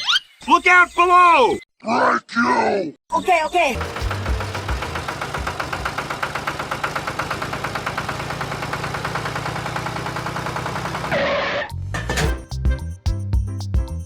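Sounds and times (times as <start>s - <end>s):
mini tractor engine chugging: 3.7s - 11.1s.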